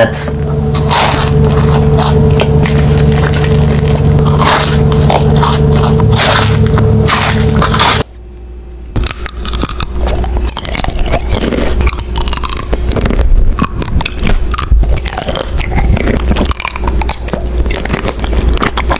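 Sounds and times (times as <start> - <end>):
steady held tones: 0.0 - 10.6
wet mouth sounds: 0.3 - 8.0, 9.0 - 18.9
person chewing crunchy food: 0.3 - 8.1, 8.9 - 18.9.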